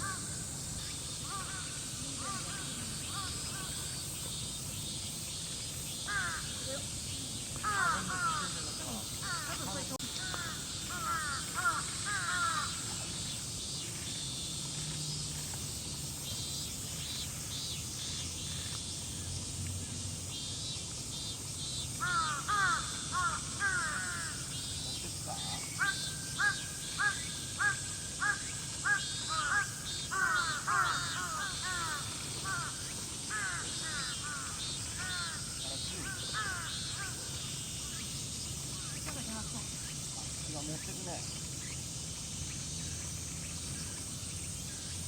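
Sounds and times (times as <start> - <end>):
crows cawing: 0.0 - 4.0, 6.0 - 6.9, 7.6 - 13.4, 22.0 - 24.6, 25.4 - 37.6
steady high hiss: 0.0 - 45.0.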